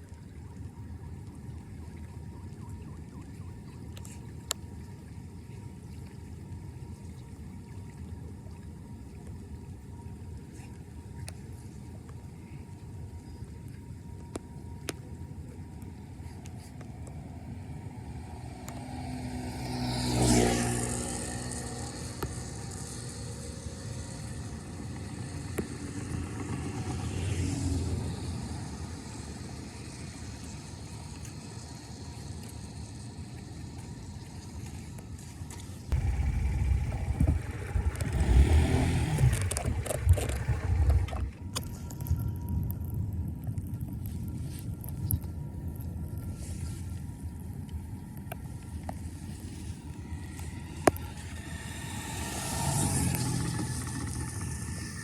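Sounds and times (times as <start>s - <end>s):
car driving past: 17.6s - 29.1s, 35.9s - 41.5s, 49.4s - 55.0s
water rushing down a drain: 35.9s - 42.0s.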